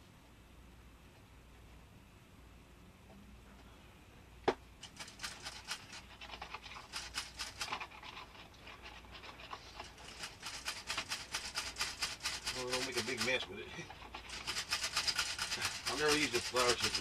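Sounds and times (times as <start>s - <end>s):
flour sifter rasping: 4.8s - 17.0s.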